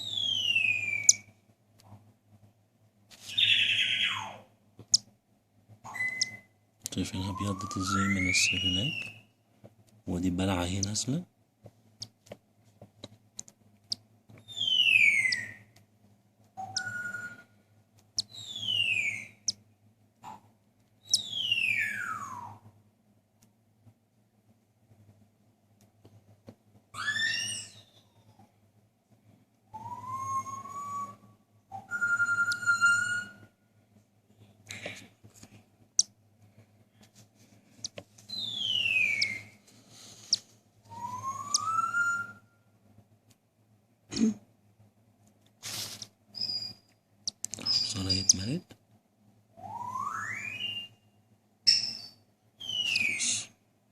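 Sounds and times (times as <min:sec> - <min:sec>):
low steady hum: 0:00.0 - 0:53.9
long whistled notes: 0:07.2 - 0:09.0
soft clicks: 0:13.0 - 0:14.0
cockatiel downward whistled calls: 0:14.5 - 0:15.6, 0:21.1 - 0:22.6, 0:27.0 - 0:28.3, 0:29.8 - 0:33.4, 0:38.3 - 0:39.5, 0:40.9 - 0:42.4, 0:52.6 - 0:53.4
short bird chirp: 0:51.7 - 0:53.5.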